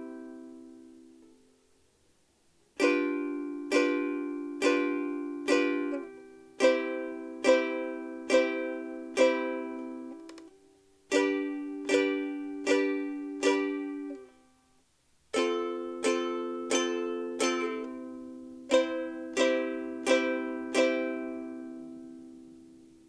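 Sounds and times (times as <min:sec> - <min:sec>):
ukulele chords strummed: 0:00.0 - 0:01.5, 0:02.7 - 0:14.6, 0:15.3 - 0:23.0.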